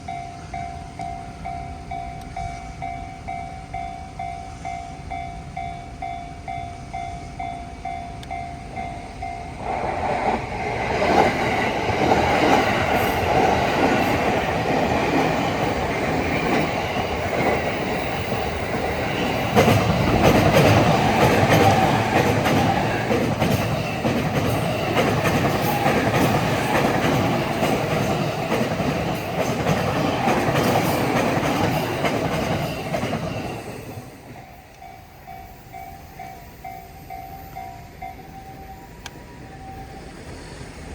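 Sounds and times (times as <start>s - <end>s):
level crossing warning bell: 0.0s - 9.6s, 11.4s - 40.3s
train wheels on rail: 0.0s - 40.9s
clickety-clack over rail joints: 9.6s - 34.9s.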